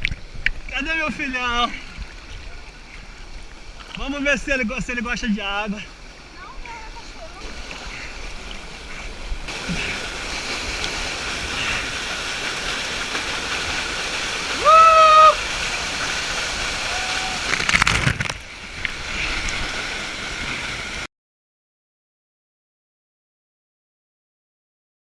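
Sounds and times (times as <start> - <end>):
waterfall rushing: 5.6 - 21.1.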